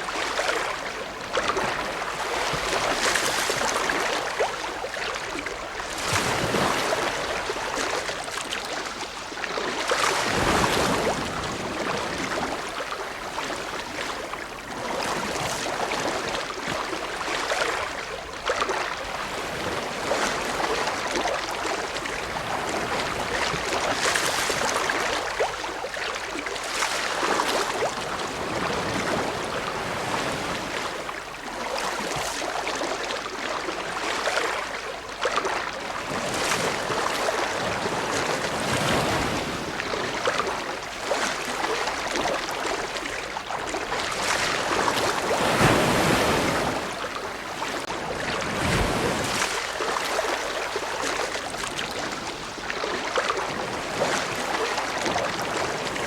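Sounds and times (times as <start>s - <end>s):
ocean waves breaking: 36.0s - 56.0s.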